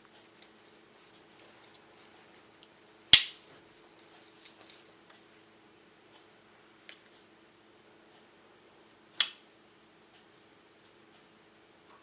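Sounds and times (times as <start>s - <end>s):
faint clicks of tools handled: 0.0s - 2.8s, 3.5s - 5.3s.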